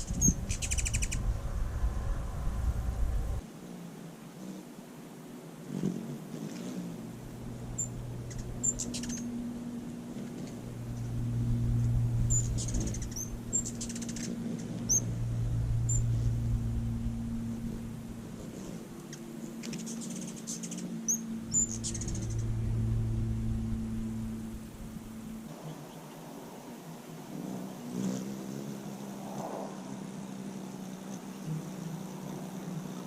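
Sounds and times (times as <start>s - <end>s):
hummingbird chip calls: 0.0s - 3.4s, 7.0s - 25.5s
hummingbird wings humming: 0.0s - 33.0s.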